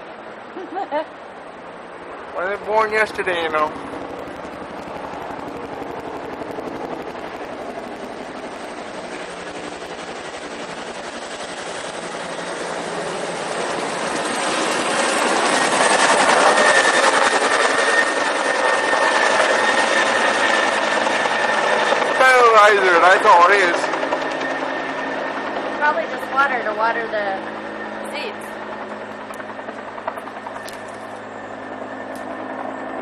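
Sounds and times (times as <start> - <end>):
helicopter flying low: 0.0 - 33.0.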